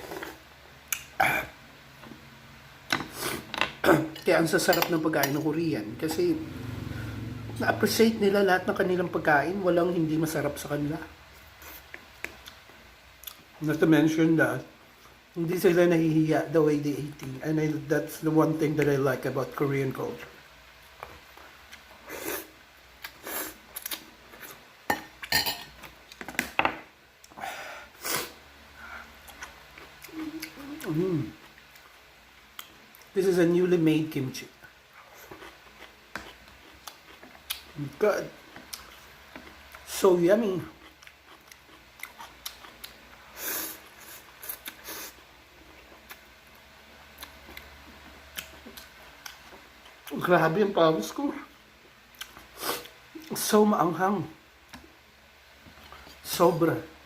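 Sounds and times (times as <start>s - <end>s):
soft chewing clicks and smacks: 11.8s - 13.8s, 29.2s - 33.2s, 34.6s - 37.8s, 38.4s - 39.9s, 40.8s - 43.2s, 43.8s - 50.3s, 51.8s - 53.4s, 54.6s - 55.0s.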